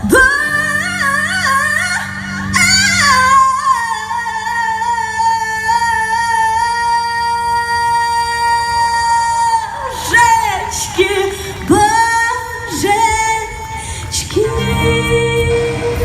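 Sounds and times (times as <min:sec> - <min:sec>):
person singing with band: 0:07.8 - 0:16.0.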